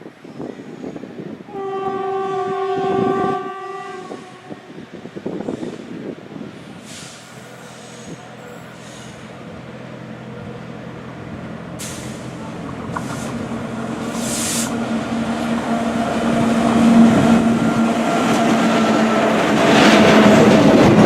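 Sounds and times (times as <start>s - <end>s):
electric locomotive hum: 0.0s - 21.0s
high hissing bursts: 11.8s - 15.0s.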